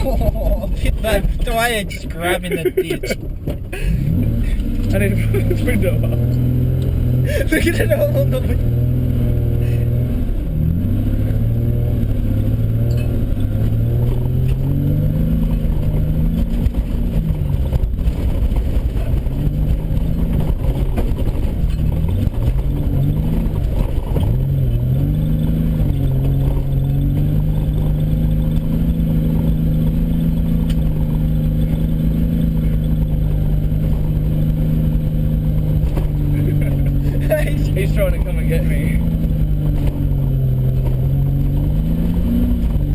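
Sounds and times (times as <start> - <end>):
car body knocking and rattling: 0.0 - 3.8, 15.4 - 42.9
car engine revving: 0.0 - 42.9.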